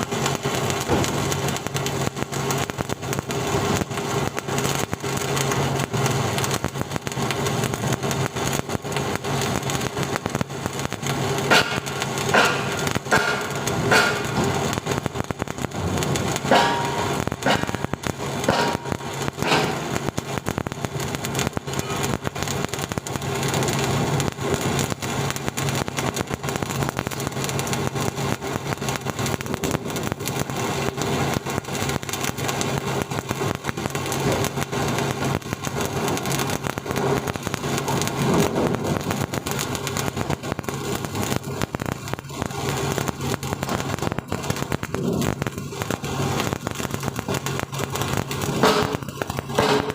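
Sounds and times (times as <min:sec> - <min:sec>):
welding arc crackling: 0:00.0 - 0:49.9.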